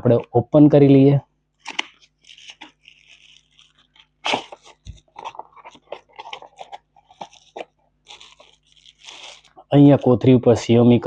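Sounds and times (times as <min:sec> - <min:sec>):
cardboard and plastic crinkling: 0:01.6 - 0:10.1.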